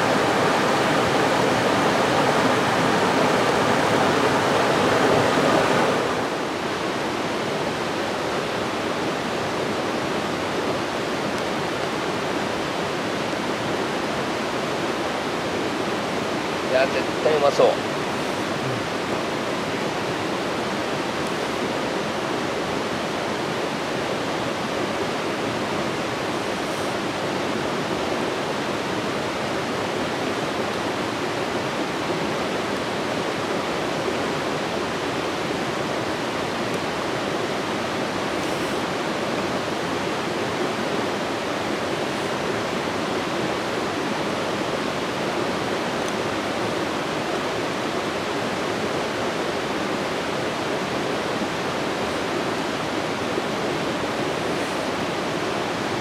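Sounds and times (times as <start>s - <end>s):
steady rushing noise: 0.0s - 6.8s.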